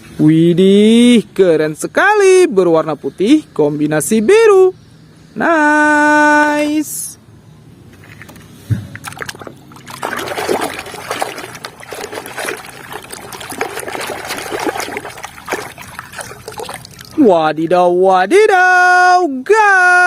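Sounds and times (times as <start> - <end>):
water splashing and trickling: 8.9 - 17.4.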